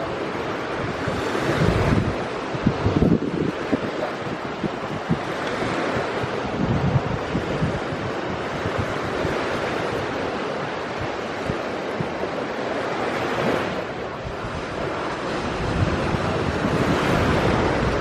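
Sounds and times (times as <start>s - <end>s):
moving water: 0.0s - 18.0s
wind buffeting microphone: 0.0s - 18.0s
wind rushing: 0.8s - 10.2s, 13.2s - 18.0s.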